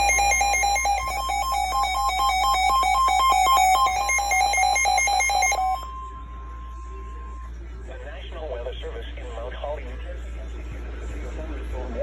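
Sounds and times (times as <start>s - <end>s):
rapid electronic beeping tones: 0.0s - 6.0s.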